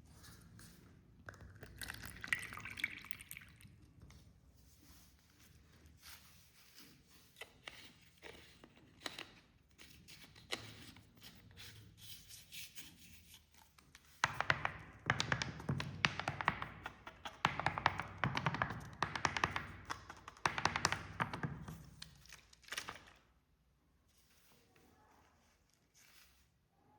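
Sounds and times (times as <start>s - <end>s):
carbonated drink pouring fizzing: 1.8s - 3.7s.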